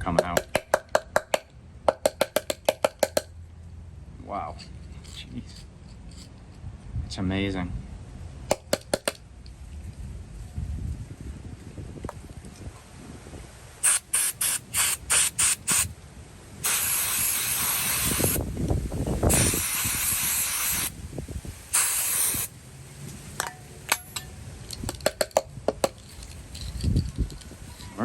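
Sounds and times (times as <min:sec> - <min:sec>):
aerosol spray can hissing: 0:13.8 - 0:15.9, 0:16.6 - 0:18.4, 0:19.3 - 0:21.0, 0:21.7 - 0:22.5.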